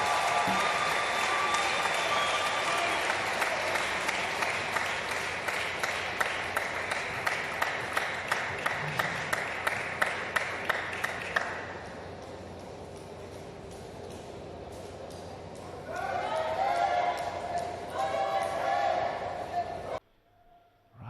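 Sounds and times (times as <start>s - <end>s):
crowd applause: 0.0s - 11.8s.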